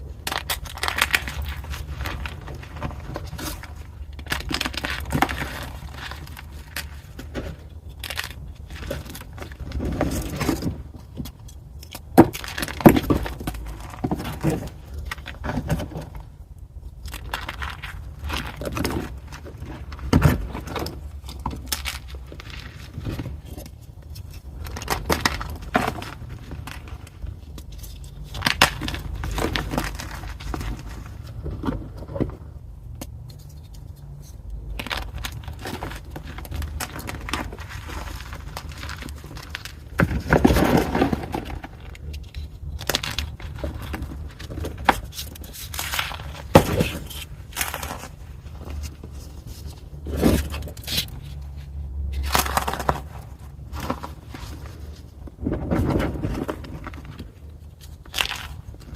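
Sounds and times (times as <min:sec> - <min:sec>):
chalk being crushed: 0:00.0 - 0:16.0, 0:33.1 - 0:55.0.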